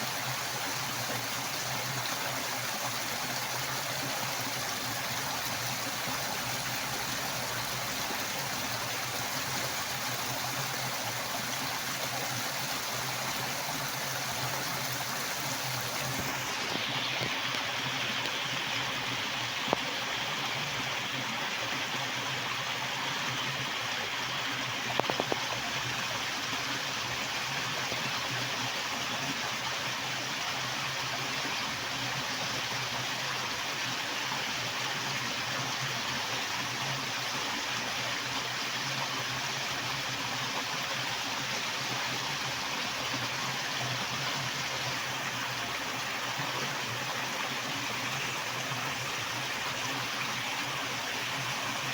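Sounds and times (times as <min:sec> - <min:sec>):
water rushing: 0:00.0 - 0:20.2.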